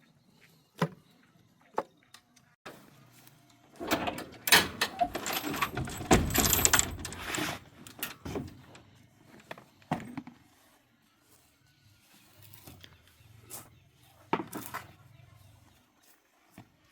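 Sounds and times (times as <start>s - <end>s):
objects knocking and rattling: 3.8s - 8.8s.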